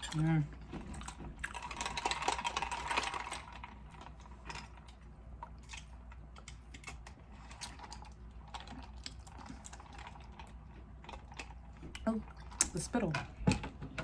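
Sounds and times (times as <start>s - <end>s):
chewing and mouth smacking: 4.8s - 12.8s.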